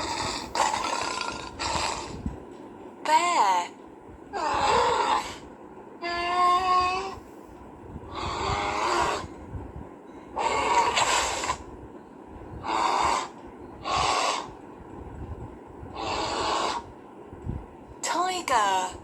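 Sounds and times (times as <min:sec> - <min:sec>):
bear growling: 0:00.0 - 0:02.4, 0:04.3 - 0:07.2, 0:08.0 - 0:09.4, 0:10.4 - 0:11.7, 0:12.6 - 0:14.6, 0:15.9 - 0:16.9.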